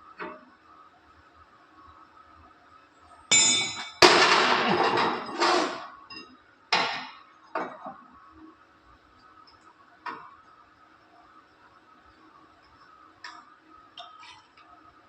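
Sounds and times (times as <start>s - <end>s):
hammer striking steel plate: 3.3s - 4.6s.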